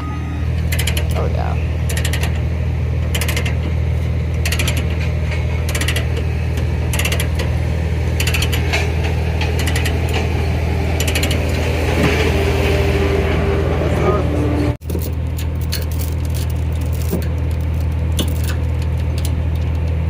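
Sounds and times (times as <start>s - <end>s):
steady low hum: 0.0s - 20.0s
ratchet clicking: 0.6s - 1.2s, 1.8s - 3.7s, 4.3s - 7.6s, 8.2s - 10.3s, 11.0s - 11.7s.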